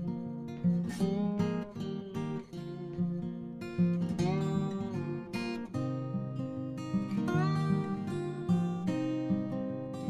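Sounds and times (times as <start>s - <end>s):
acoustic guitar music: 0.0s - 10.0s.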